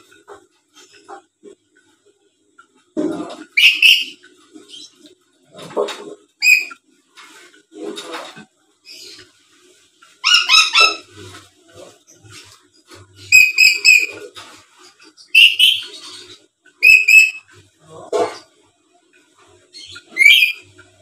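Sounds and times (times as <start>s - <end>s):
parrot shrill whistled calls: 3.6s - 4.2s, 6.4s - 6.8s, 10.2s - 11.0s, 13.3s - 14.1s, 15.3s - 15.8s, 16.8s - 17.4s, 20.1s - 20.6s.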